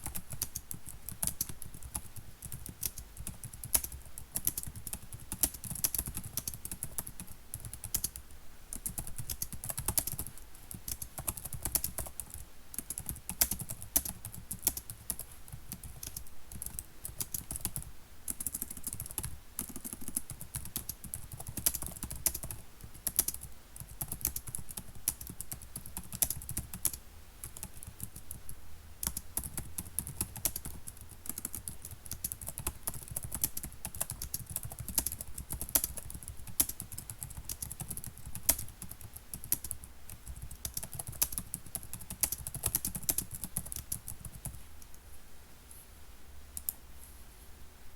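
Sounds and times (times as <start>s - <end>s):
keyboard typing clicks: 0.0s - 8.2s, 8.8s - 15.2s, 29.0s - 45.0s.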